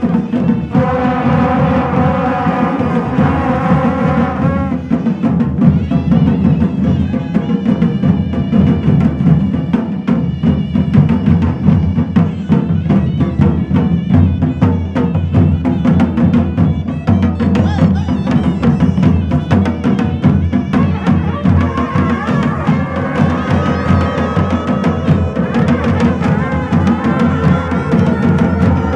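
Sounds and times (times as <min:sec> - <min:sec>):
loud fast drumming: 0:00.0 - 0:28.9
pitched melody instrument: 0:17.5 - 0:28.9.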